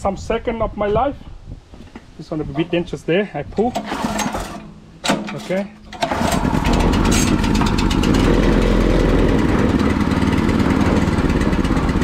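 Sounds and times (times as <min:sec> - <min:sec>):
petrol engine starting and running: 0:03.8 - 0:12.0.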